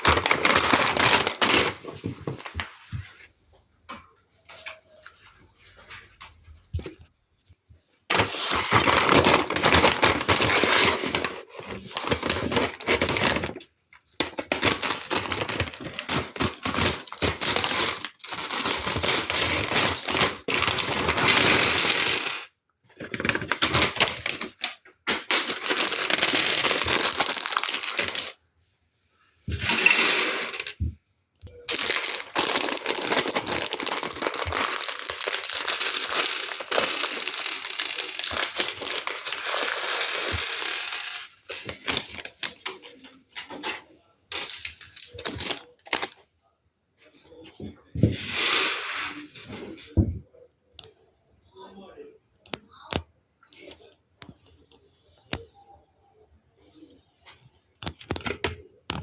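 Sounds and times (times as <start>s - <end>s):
plastic pieces clattering: 0.0s - 2.5s, 8.1s - 28.4s, 29.5s - 30.9s, 31.5s - 46.2s.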